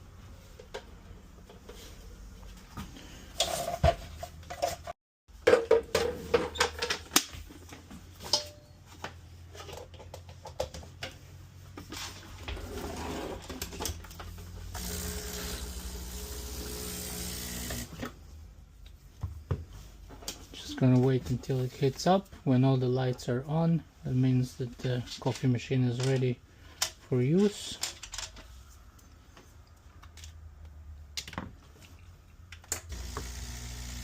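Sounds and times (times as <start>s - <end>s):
espresso machine pump humming: 14.8s - 18.0s, 32.9s - 34.0s.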